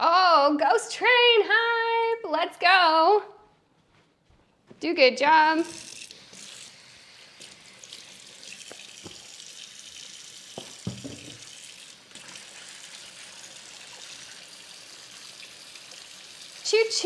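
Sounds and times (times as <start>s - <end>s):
water running from tap into sink: 5.7s - 17.0s
light knocks: 10.6s - 11.4s.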